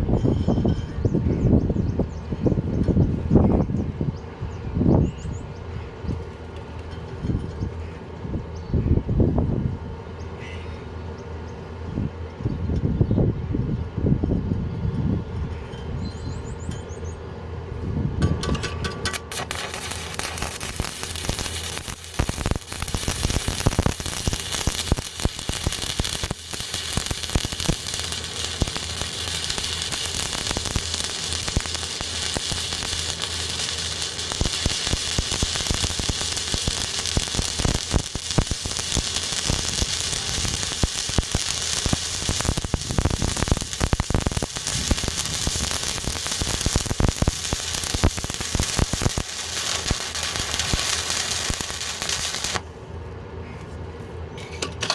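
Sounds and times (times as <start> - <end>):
welding arc crackling: 18.4 - 52.7.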